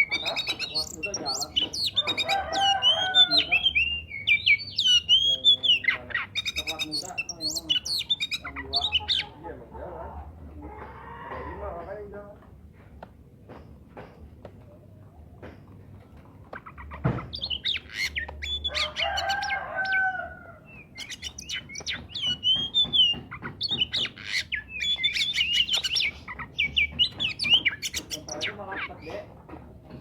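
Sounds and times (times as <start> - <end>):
songbird whistles and trills: 20.6 - 28.5.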